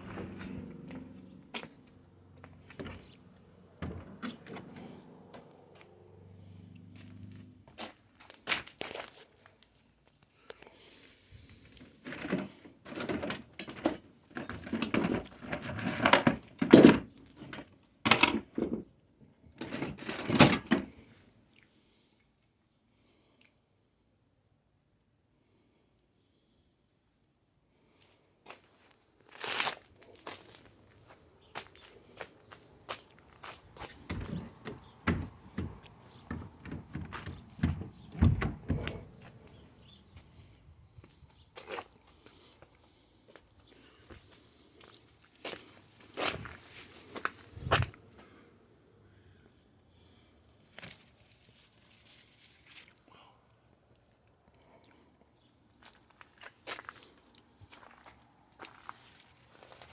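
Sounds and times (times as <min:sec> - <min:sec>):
irregular knocks and thumps: 0:34.0 - 0:39.2.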